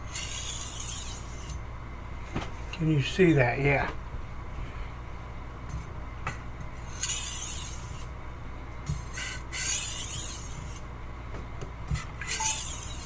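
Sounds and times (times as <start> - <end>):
knife scraping sharpening stone: 0.1 - 1.6, 6.8 - 8.1, 9.0 - 10.8, 12.0 - 13.0.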